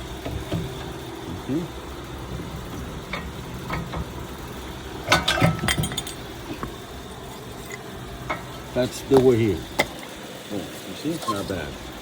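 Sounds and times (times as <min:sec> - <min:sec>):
steady low hum: 0:00.0 - 0:12.0
metal brake parts clinking: 0:05.1 - 0:06.8.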